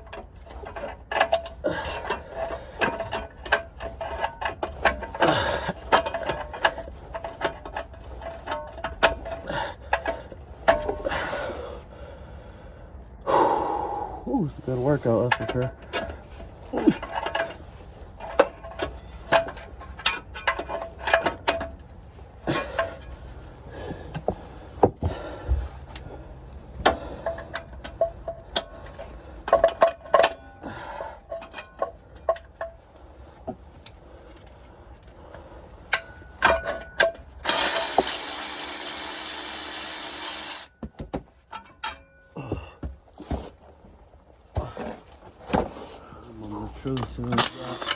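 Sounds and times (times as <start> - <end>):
loud mechanical whirring: 37.4 - 40.7
hand tools clinking on metal: 46.9 - 47.9.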